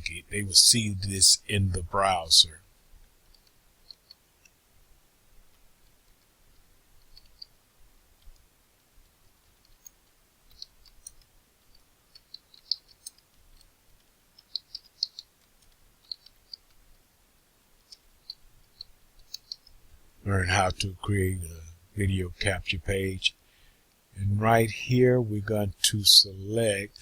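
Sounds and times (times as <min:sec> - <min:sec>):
keyboard and mouse clicking: 0:07.0 - 0:07.5.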